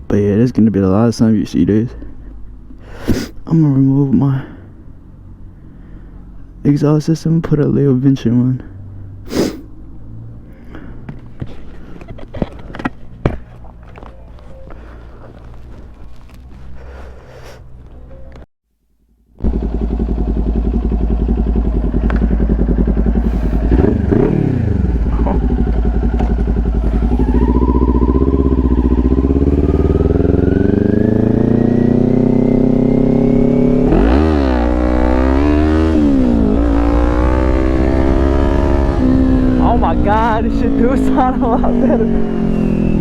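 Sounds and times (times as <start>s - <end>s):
motorcycle engine idling and revving: 8.6s - 18.5s, 19.4s - 43.0s.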